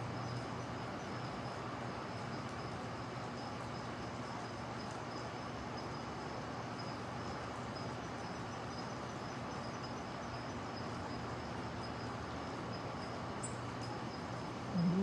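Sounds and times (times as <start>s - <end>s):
even outdoor hiss: 0.0s - 15.0s
faint high-pitched chirp: 14.7s - 15.0s.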